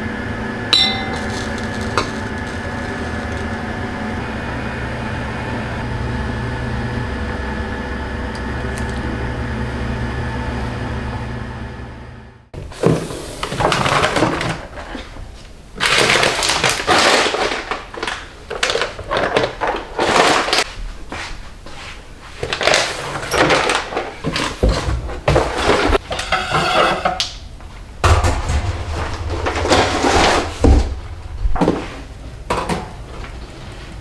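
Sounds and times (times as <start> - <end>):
household items rustling and knocking: 0.8 - 3.7, 22.4 - 33.8.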